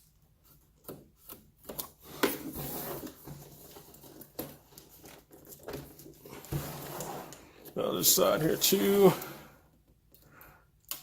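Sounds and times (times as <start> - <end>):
cardboard scraping and rubbing: 2.0 - 7.6.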